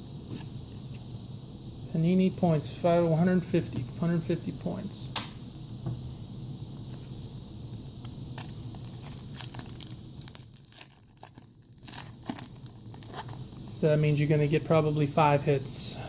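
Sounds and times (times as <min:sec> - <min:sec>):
card pack wrapper crinkling: 0:08.0 - 0:14.2.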